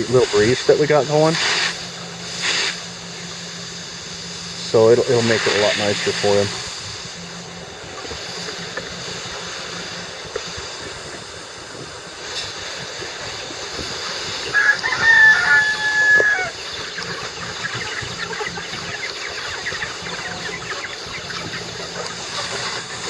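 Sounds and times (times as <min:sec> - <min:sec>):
steady hiss: 0:00.0 - 0:23.0
rooster crowing: 0:14.5 - 0:16.6.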